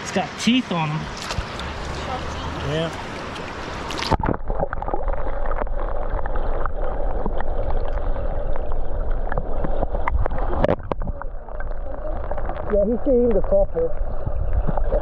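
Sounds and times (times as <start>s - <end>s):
water gurgling and sloshing: 0.0s - 15.0s.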